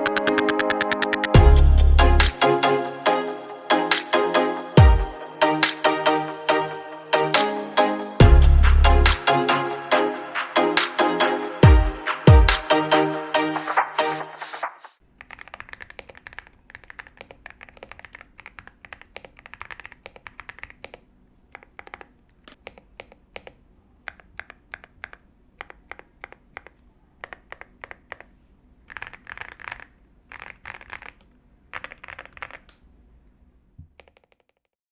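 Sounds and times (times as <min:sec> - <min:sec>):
mechanical keyboard typing: 0:15.2 - 0:32.8, 0:33.9 - 0:34.7.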